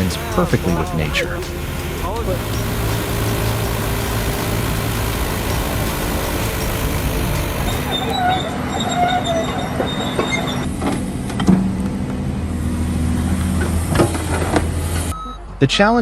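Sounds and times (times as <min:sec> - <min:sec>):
high metallic squeals: 0:00.0 - 0:10.9
heavy machinery humming: 0:00.0 - 0:15.1.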